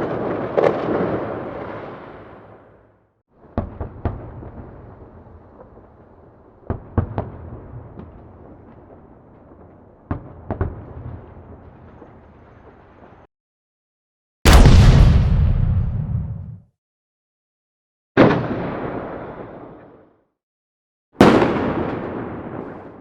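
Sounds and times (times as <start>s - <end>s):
low rumble: 14.5s - 16.6s
sharp explosion bangs: 14.5s - 16.6s.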